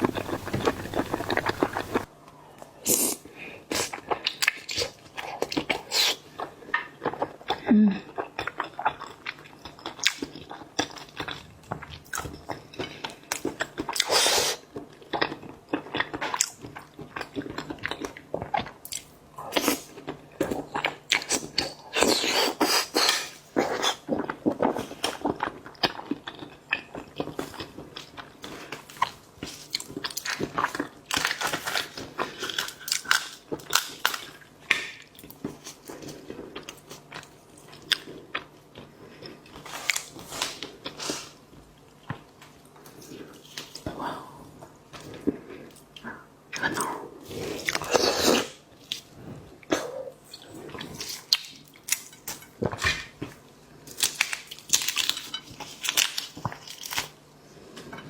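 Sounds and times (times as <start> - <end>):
biting and chewing seafood: 0.0 - 2.1, 44.9 - 57.2.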